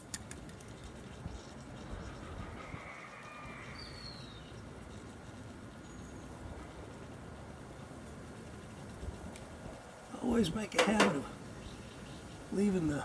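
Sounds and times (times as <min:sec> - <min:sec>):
bird chirps: 0:01.0 - 0:06.7.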